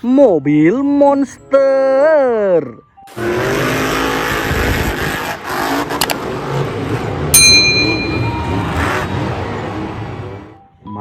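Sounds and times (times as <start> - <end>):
vehicle engine running: 3.1 - 10.6
bright ringing ding: 7.4 - 8.9.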